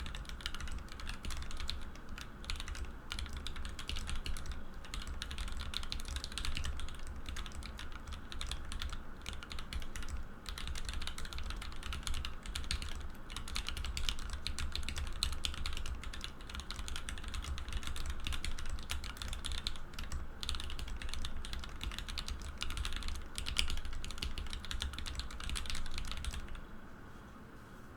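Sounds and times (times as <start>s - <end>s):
mechanical keyboard typing: 0.0s - 26.6s.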